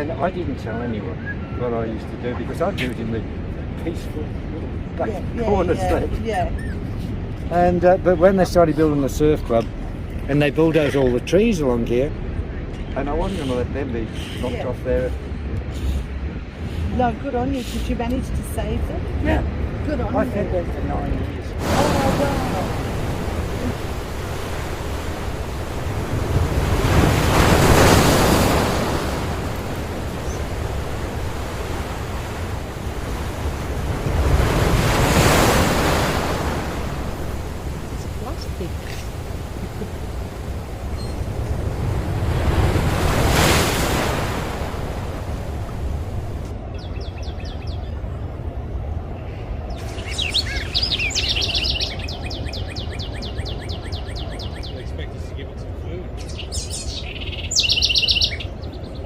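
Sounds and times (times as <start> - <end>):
wind buffeting microphone: 0.0 - 59.0
butcherbirds calling: 12.5 - 15.0, 21.9 - 45.4, 46.7 - 48.1, 49.2 - 55.1, 56.0 - 59.0
ocean surf breaking: 19.0 - 46.8.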